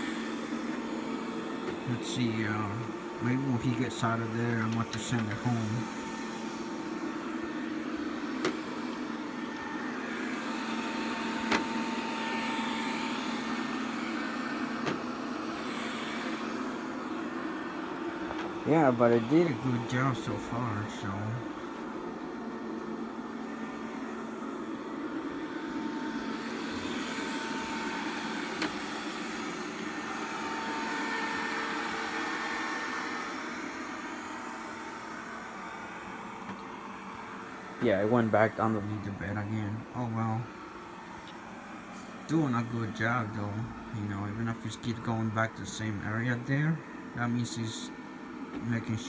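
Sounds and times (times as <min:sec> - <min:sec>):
robot vacuum humming: 0:00.0 - 0:49.0.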